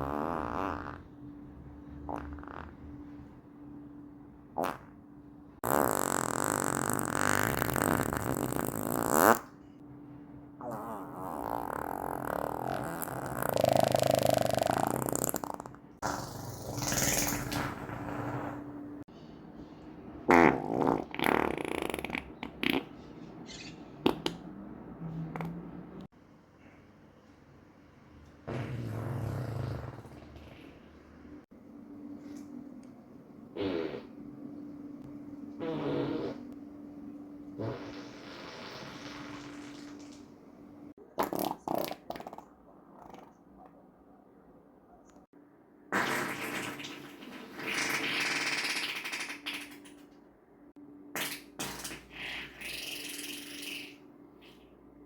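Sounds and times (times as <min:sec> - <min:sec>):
person farting: 0:00.0 - 0:01.0, 0:02.1 - 0:02.8, 0:04.6 - 0:05.0, 0:05.6 - 0:09.5, 0:10.6 - 0:18.7, 0:20.3 - 0:23.0, 0:28.5 - 0:30.7, 0:33.6 - 0:34.1, 0:35.6 - 0:36.6, 0:37.6 - 0:40.0, 0:41.2 - 0:42.4, 0:45.9 - 0:49.9.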